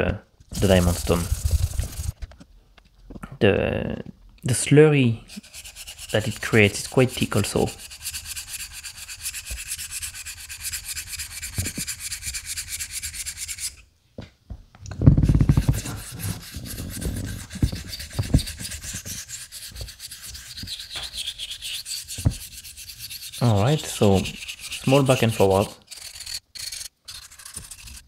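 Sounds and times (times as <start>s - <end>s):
razor blade scraping on wet stone: 5.2s - 13.8s, 15.5s - 28.0s.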